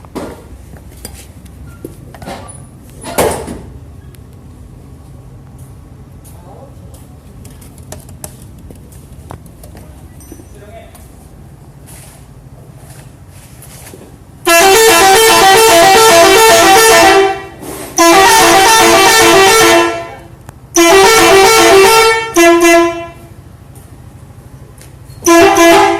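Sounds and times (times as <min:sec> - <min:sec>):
truck musical horn jingle: 0:14.4 - 0:23.4, 0:25.2 - 0:25.9.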